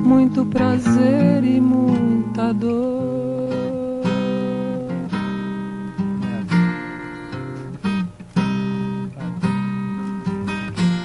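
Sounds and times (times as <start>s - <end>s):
acoustic guitar strumming chords: 0.0s - 11.0s.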